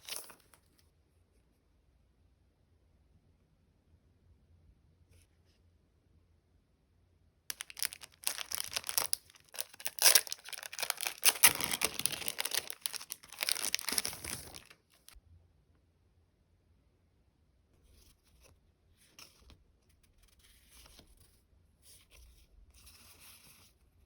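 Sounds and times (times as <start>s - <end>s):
plastic packaging crinkling: 7.5s - 15.2s.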